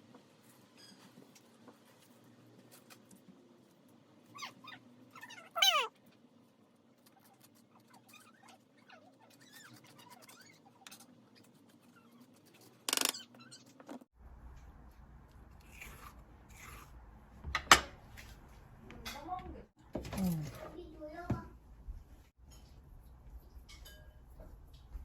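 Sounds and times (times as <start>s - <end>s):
animal squeaks and whines: 4.2s - 6.0s, 7.1s - 13.9s.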